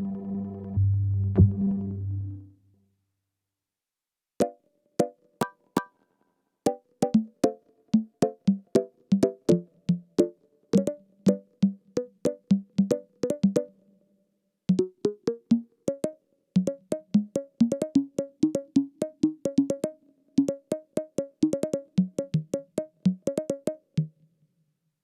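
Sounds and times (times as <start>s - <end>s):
plucky synthesizer notes: 6.7s - 13.8s, 14.7s - 24.2s.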